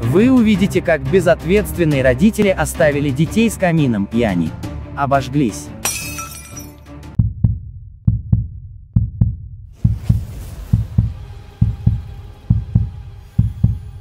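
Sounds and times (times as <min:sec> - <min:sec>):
heartbeat thumps: 0:07.2 - 0:14.0.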